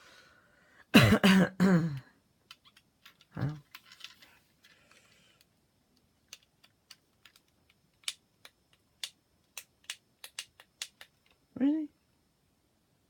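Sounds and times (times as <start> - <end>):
sharp plastic clicks: 5.4 - 11.4.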